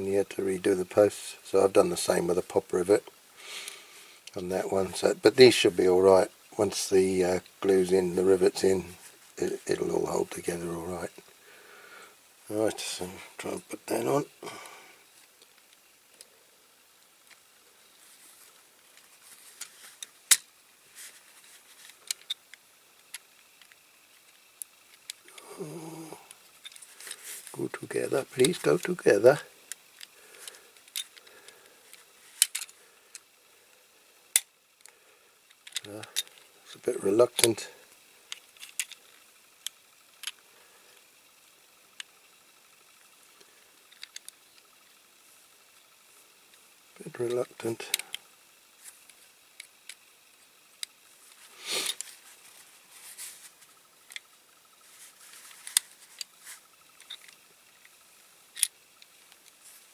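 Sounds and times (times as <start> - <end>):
model parts clicking together: 19.6 - 20.6, 21.8 - 25.5, 28.3 - 31.3, 31.9 - 33.4, 34.3 - 36.4, 37.3 - 40.4, 43.8 - 44.8, 47.4 - 48.2, 49.0 - 51.0, 54.1 - 54.4, 55.4 - 59.6.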